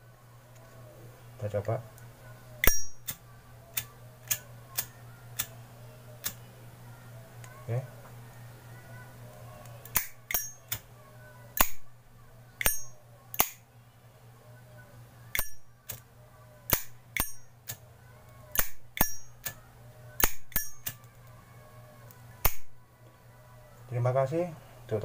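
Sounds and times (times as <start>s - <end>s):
lighter lid clicking open and shut: 2.6s - 3.2s, 12.6s - 13.6s, 15.4s - 15.6s, 18.6s - 19.3s.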